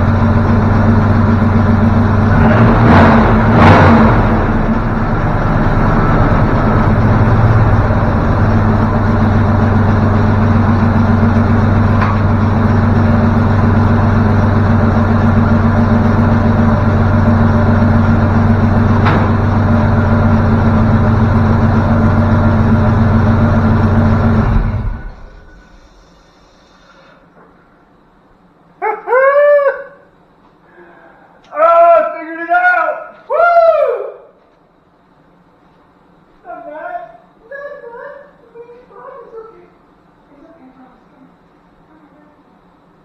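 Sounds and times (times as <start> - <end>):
car engine idling: 0.0 - 27.0.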